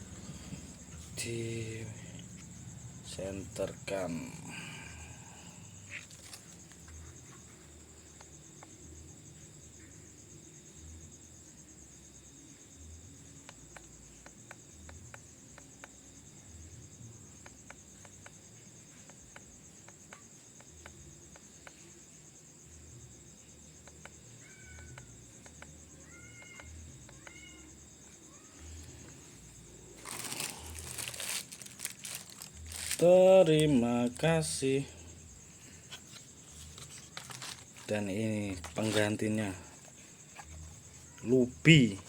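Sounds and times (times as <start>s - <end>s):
night insects chirring: 0.0s - 42.0s
cat meowing: 26.0s - 27.7s.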